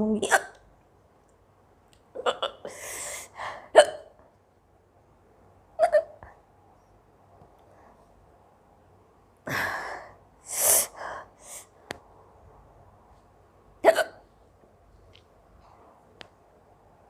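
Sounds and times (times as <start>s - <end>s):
woman hiccupping: 2.2s - 2.8s.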